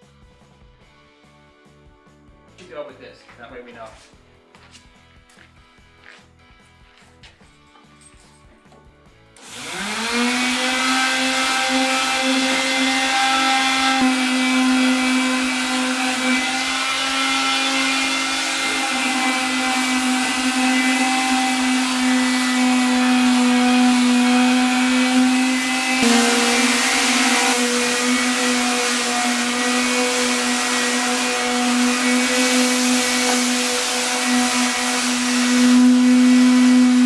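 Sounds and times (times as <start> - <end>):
electric power sander humming: 9.4 - 37.0.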